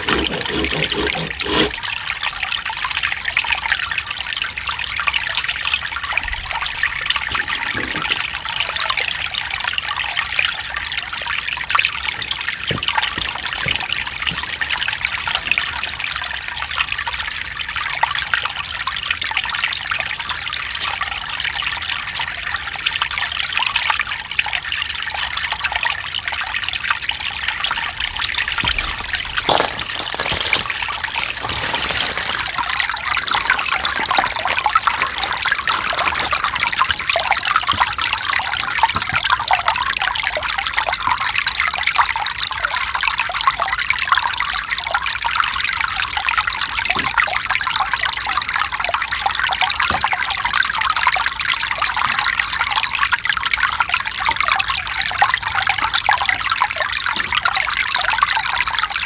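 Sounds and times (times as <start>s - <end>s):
stream babbling over rocks: 27.5s - 39.9s.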